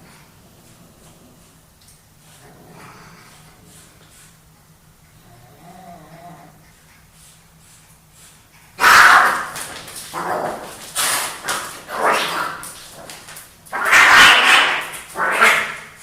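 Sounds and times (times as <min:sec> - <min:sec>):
cats fighting: 0:08.7 - 0:16.0.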